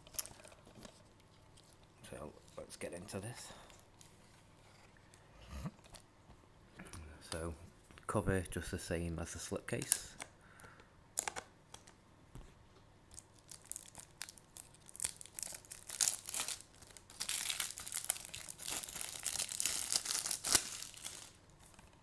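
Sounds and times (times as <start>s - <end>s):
plastic packaging crinkling: 13.1s - 22.0s.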